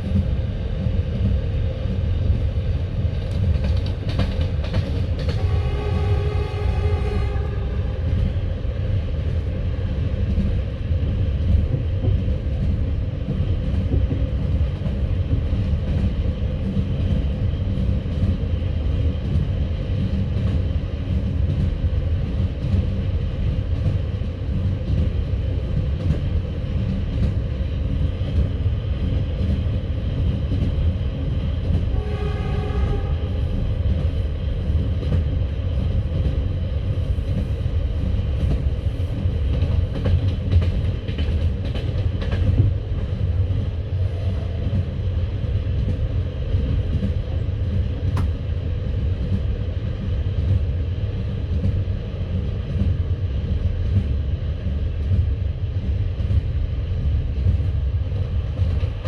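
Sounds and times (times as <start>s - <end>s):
train wheels rumbling on rail: 0.0s - 59.0s
train horn: 5.2s - 8.2s, 31.9s - 33.7s.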